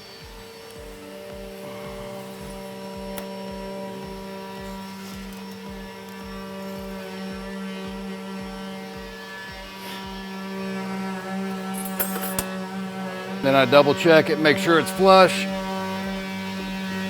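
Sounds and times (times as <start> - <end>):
faint low pulse: 0.0 - 10.8
steady hum: 0.0 - 17.0.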